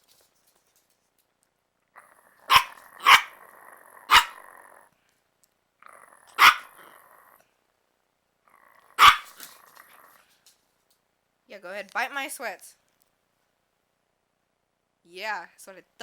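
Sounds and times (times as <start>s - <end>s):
dog growling: 2.0s - 4.9s, 5.8s - 7.5s, 8.4s - 10.3s
dog barking: 2.4s - 4.5s, 6.3s - 6.9s, 9.0s - 9.4s.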